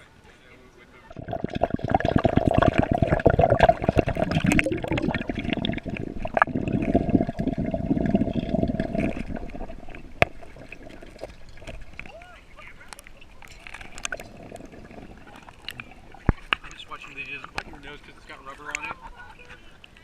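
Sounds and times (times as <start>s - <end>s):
steady hum: 1.0s - 12.0s
water splashing and sloshing: 1.1s - 19.8s.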